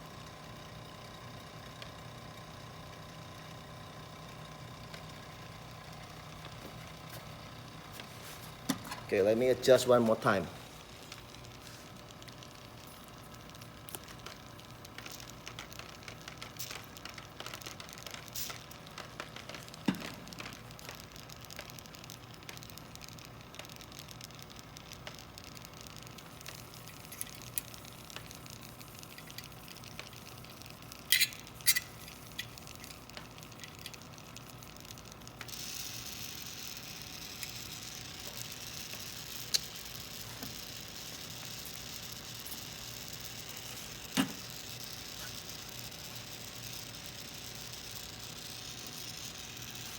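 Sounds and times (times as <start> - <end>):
steady hiss: 8.0 - 49.9
small clicks and taps: 11.1 - 36.0, 37.0 - 49.9.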